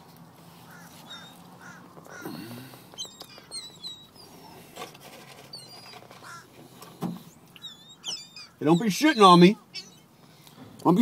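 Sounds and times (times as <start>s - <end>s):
seagulls calling: 0.5s - 11.0s
thin high-pitched bird calls: 3.0s - 4.3s, 7.2s - 10.1s.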